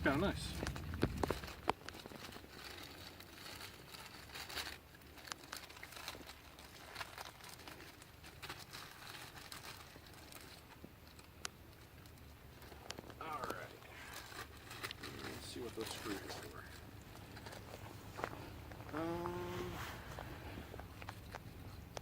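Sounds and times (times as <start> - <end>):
plastic packaging crinkling: 0.2 - 19.0.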